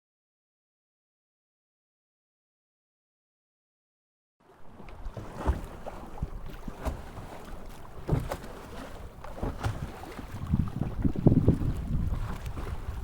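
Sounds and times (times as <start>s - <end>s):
water rushing past: 4.4s - 13.0s
hull thumping waves: 4.6s - 13.0s
wind buffeting microphone: 8.0s - 13.0s.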